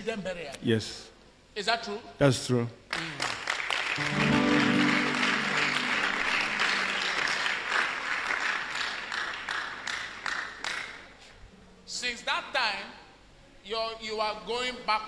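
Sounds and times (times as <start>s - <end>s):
congregation applauding and cheering: 2.9s - 11.2s
low held musical chord: 4.0s - 7.8s.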